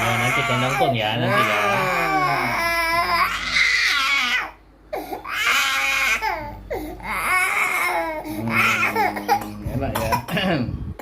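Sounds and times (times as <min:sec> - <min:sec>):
baby crying: 0:00.0 - 0:09.6.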